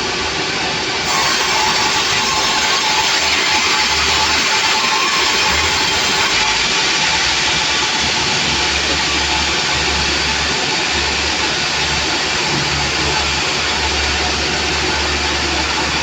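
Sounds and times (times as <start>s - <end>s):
sawmill machinery drone: 0.0s - 16.0s.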